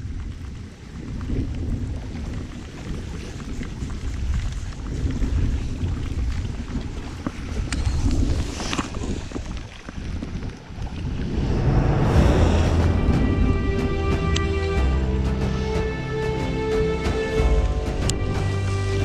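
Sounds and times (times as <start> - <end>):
wind buffeting microphone: 0.0 - 14.8.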